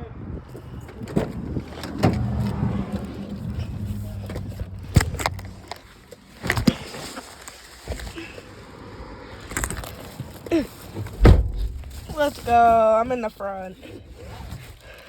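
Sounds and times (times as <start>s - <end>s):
knocks and clatter in a car: 0.6s - 5.9s, 10.9s - 12.7s.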